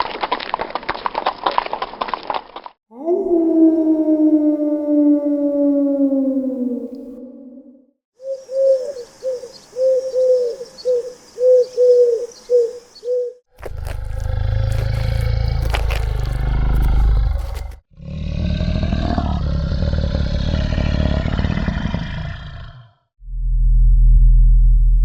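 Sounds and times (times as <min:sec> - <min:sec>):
long falling animal call: 0:02.9 - 0:08.9
loud low roar: 0:13.6 - 0:23.0.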